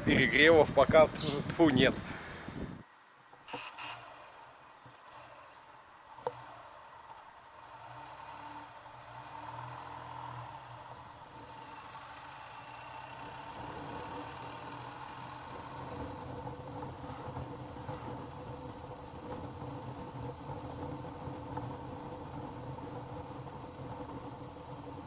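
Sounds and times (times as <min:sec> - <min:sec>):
wind noise: 0:00.0 - 0:02.8
motorcycle engine running: 0:03.5 - 0:25.0.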